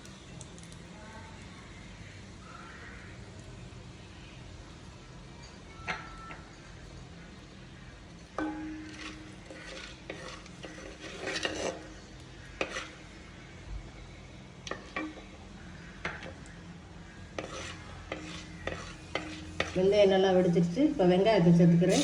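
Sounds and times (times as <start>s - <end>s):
oil sizzling: 6.6s - 13.6s, 14.4s - 20.2s
metal spoon scraping a pan: 8.3s - 13.2s, 14.7s - 16.5s, 17.2s - 20.0s
pan ringing: 8.4s - 9.8s
spoon knocking on pan: 8.4s - 11.9s, 12.6s - 12.9s, 14.7s - 15.4s, 16.0s - 16.4s, 17.4s - 19.8s.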